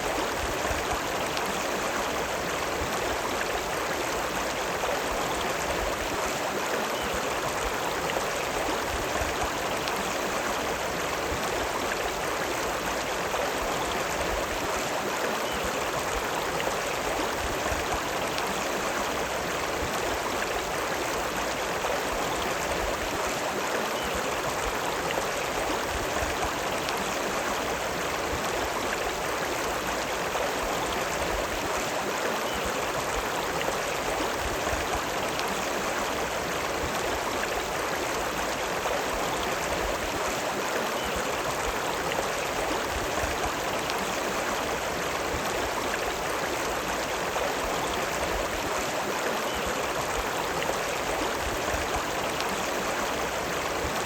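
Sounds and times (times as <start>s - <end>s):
river water rushing: 0.0s - 54.0s.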